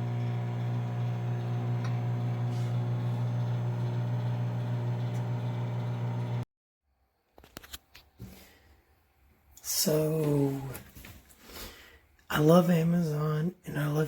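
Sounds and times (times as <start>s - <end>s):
microwave oven humming: 0.0s - 6.4s.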